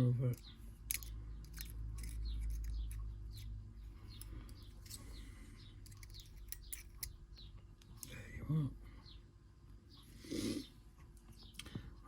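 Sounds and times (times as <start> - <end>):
metal lock parts clicking: 0.3 - 3.5, 5.8 - 7.2.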